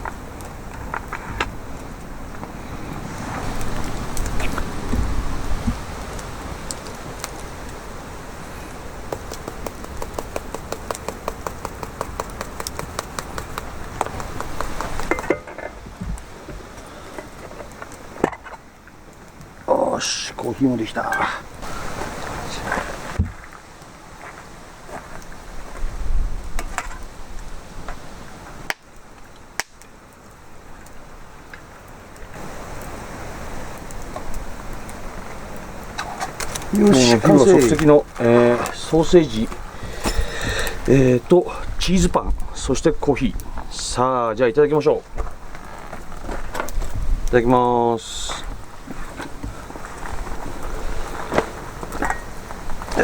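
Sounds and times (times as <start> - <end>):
wind buffeting microphone: 0.0 - 10.2, 44.5 - 47.5
campfire crackling and popping: 0.0 - 53.0.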